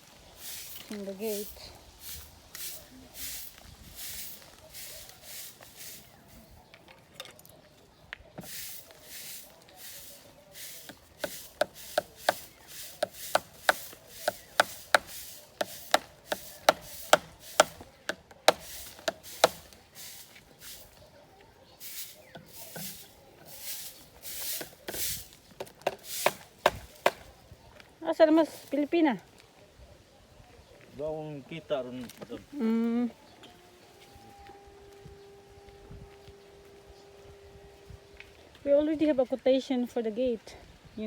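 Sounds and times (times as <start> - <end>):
rasping strokes: 8.4 - 21.0, 21.8 - 27.3.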